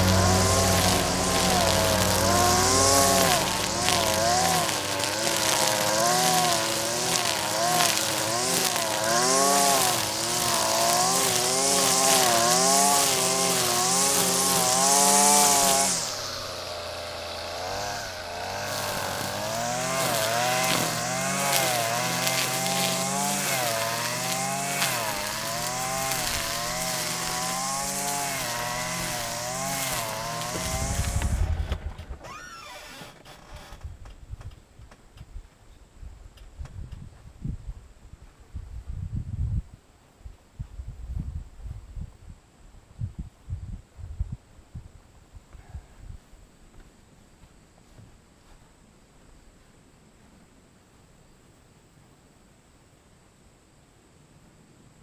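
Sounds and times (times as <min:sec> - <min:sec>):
string trimmer engine running: 0:00.0 - 0:32.9
trimmer cutting grass hiss: 0:00.0 - 0:33.1.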